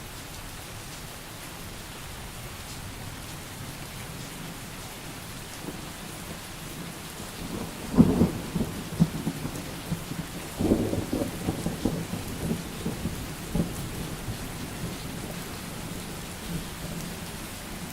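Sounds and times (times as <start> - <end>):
steady rain falling: 0.0 - 17.9
thunder rumbling: 6.8 - 17.0.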